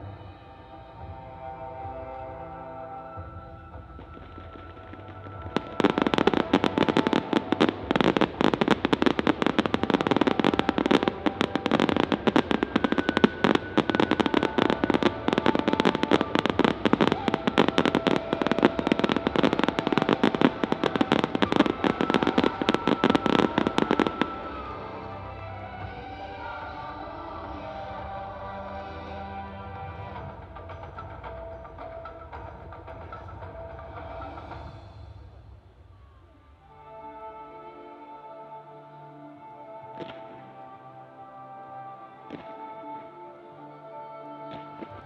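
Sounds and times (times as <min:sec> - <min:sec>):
background music with held tones: 0:00.0 - 0:45.0
fireworks crackling: 0:03.3 - 0:37.8.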